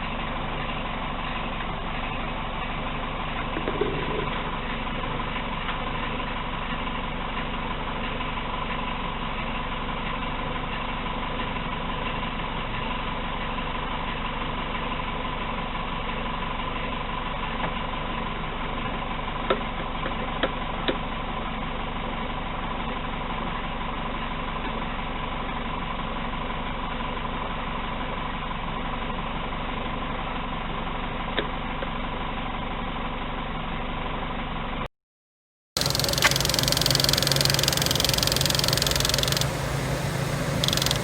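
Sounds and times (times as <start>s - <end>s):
car engine idling: 0.0s - 34.8s, 35.8s - 41.0s
faint clicks: 35.8s - 41.0s
high-pitched engine tone: 35.8s - 41.0s.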